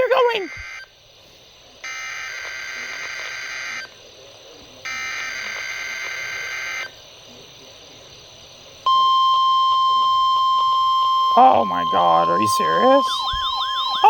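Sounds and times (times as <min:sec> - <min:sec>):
buzzy digital data bursts: 0:00.0 - 0:01.0, 0:01.6 - 0:07.0, 0:11.3 - 0:14.0
steady warning alarm tone: 0:00.0 - 0:01.0, 0:01.8 - 0:04.0, 0:04.8 - 0:07.0, 0:08.9 - 0:14.0.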